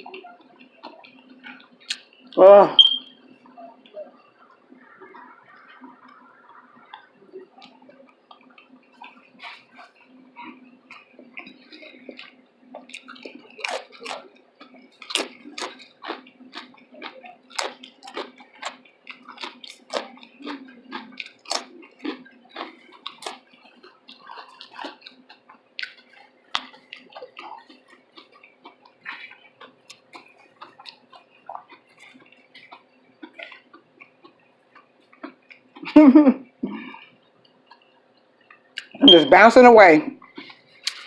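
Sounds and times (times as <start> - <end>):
wet chewing and lip-smacking: 0.0 - 36.0, 36.8 - 39.0, 40.2 - 41.0
faint steady hum: 0.0 - 41.0.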